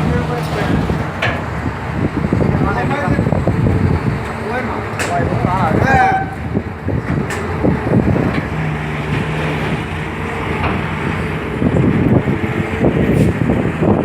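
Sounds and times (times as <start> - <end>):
large engine running: 0.0 - 14.0
knocks and clatter: 0.4 - 1.6, 7.0 - 12.1.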